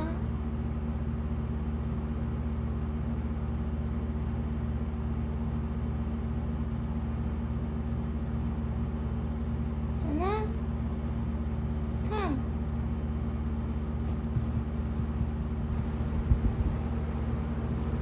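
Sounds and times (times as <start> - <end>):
low mechanical hum: 0.0 - 18.0
fast pulsing drone: 13.6 - 18.0.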